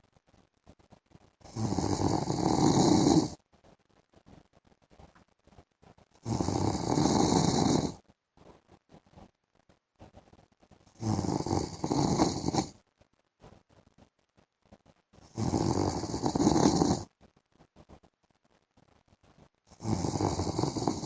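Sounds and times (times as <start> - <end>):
man snoring: 1.5 - 3.4, 6.2 - 8.0, 11.0 - 12.7, 15.3 - 17.0, 19.7 - 21.0.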